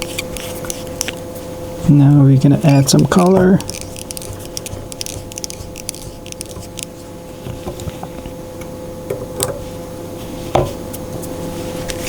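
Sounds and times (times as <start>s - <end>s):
steady hum: 0.0s - 12.0s
light handling noises: 2.6s - 8.4s.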